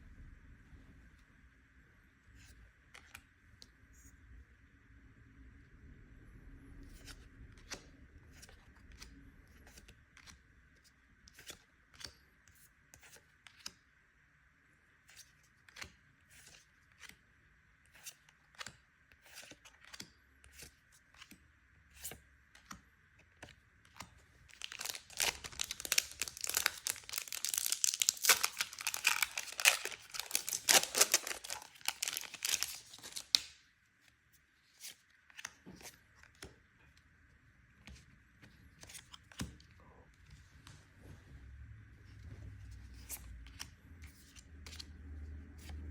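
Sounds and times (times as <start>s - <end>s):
foil wrapper tearing and crinkling: 24.6s - 33.4s.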